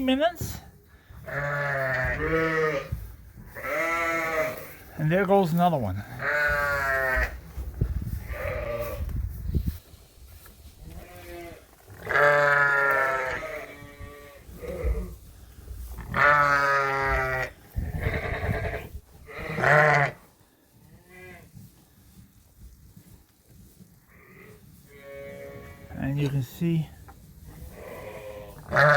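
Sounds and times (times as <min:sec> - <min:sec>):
sheep bleating: 0:01.3 - 0:02.9, 0:03.6 - 0:04.8, 0:06.2 - 0:07.4, 0:10.9 - 0:15.1, 0:16.0 - 0:20.2, 0:27.7 - 0:28.9.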